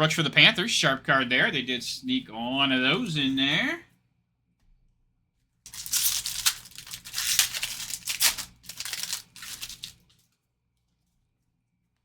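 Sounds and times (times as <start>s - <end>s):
foil wrapper crinkling: 5.7s - 10.5s.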